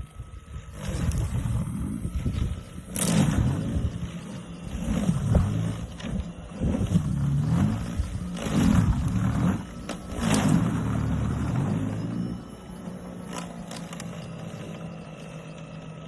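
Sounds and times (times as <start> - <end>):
electric snow blower running: 0.0 - 16.0.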